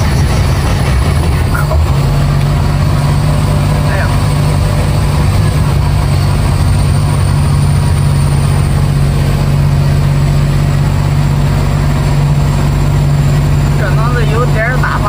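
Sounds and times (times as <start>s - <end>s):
truck engine droning: 0.0s - 15.0s.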